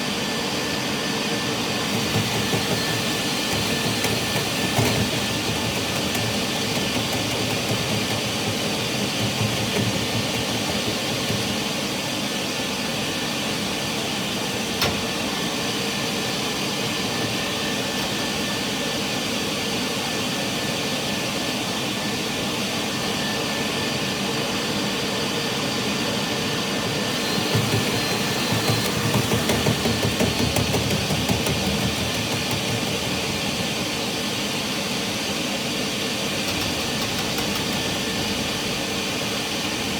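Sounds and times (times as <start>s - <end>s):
cleaning machine motor whirring: 0.0s - 19.8s, 26.5s - 39.9s.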